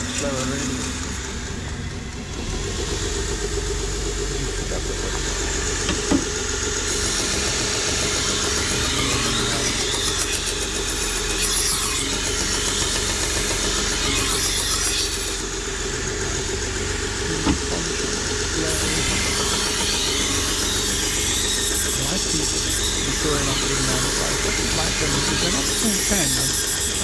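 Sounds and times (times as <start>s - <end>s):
belt grinder motor hum: 0.0s - 27.0s
knife blade grinding: 8.2s - 13.2s, 18.7s - 27.0s.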